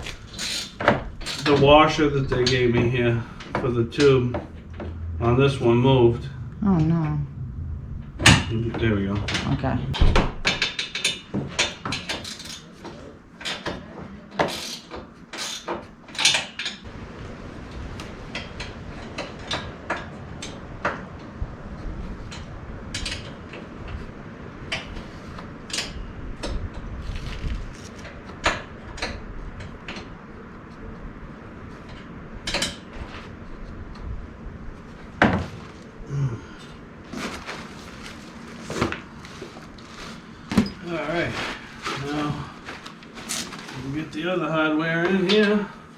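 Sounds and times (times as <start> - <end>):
low steady rumble: 0.0 - 11.8.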